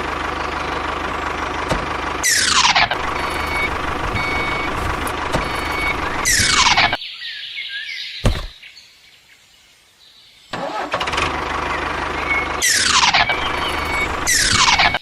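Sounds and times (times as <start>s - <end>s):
small motor running: 2.9s - 7.0s, 13.2s - 15.0s.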